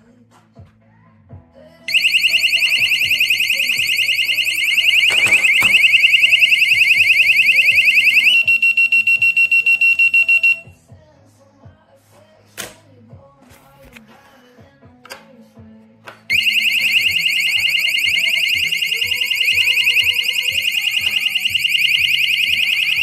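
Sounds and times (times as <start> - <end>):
warbling alarm siren: 1.9 - 10.6, 16.3 - 23.0
rapid high beeping: 1.9 - 10.7, 16.3 - 23.0.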